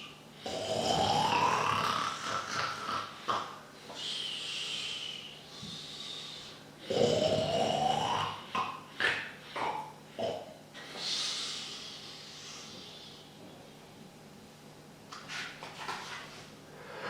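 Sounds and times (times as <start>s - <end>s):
man imitating cartoon snoring: 0.4s - 5.0s, 6.8s - 10.5s.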